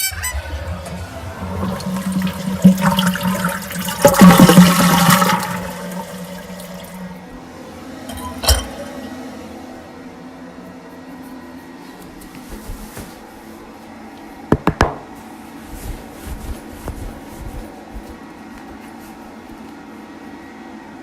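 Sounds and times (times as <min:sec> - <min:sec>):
toilet flushing: 0:00.0 - 0:09.8.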